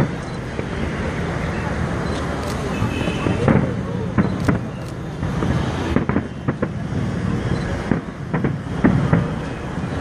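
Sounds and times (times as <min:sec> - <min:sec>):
fireworks bangs and crackles: 0:00.0 - 0:10.0.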